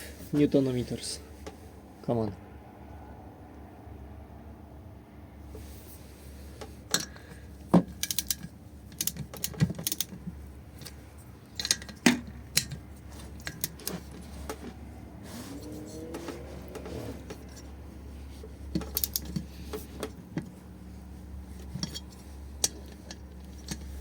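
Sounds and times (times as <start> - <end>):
torque wrench clicks: 8.0 - 8.4.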